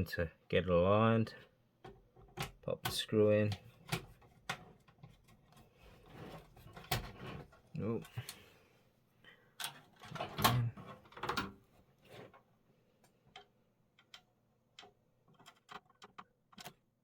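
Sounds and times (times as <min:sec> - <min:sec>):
knocks and scrapes: 0:03.6 - 0:07.8, 0:09.7 - 0:12.5.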